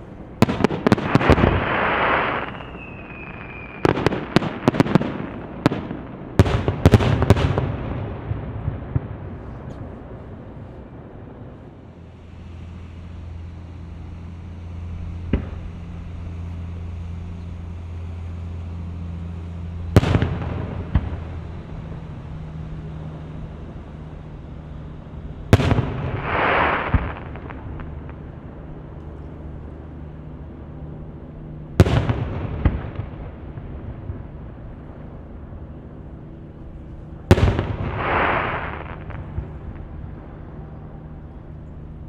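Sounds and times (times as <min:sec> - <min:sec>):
hissing crackle: 0:00.0 - 0:05.6, 0:09.4 - 0:29.0
low steady hum: 0:00.0 - 0:42.0
fireworks bursting with bangs: 0:00.4 - 0:11.6, 0:14.0 - 0:17.2, 0:19.8 - 0:22.4, 0:25.4 - 0:28.3, 0:31.8 - 0:34.4, 0:37.3 - 0:40.0.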